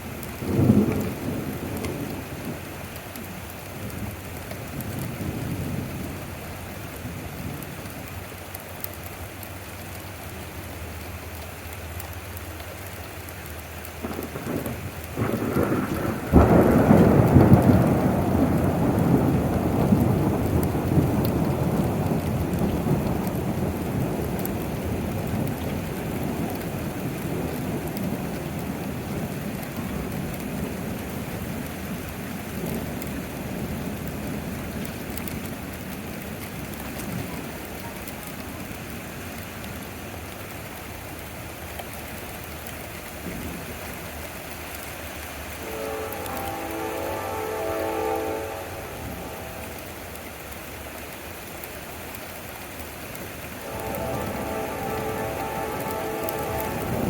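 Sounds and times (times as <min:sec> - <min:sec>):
steady falling rain: 0:00.0 - 0:57.0
thunder rumbling: 0:00.2 - 0:08.4, 0:13.8 - 0:37.8, 0:45.4 - 0:57.0
thunderclap: 0:14.0 - 0:31.2, 0:53.1 - 0:57.0.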